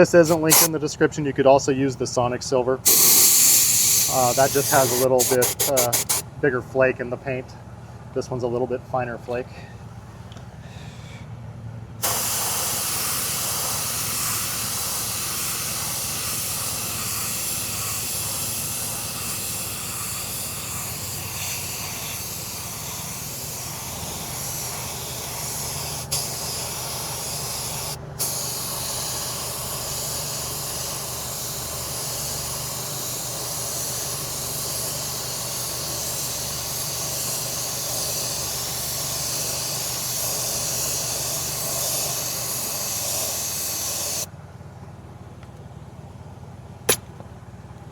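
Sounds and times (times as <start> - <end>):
spray gun click: 0.0 - 0.7, 2.9 - 6.2, 12.0 - 44.3
paint spray hissing: 0.0 - 0.8, 2.9 - 6.2, 12.0 - 44.3.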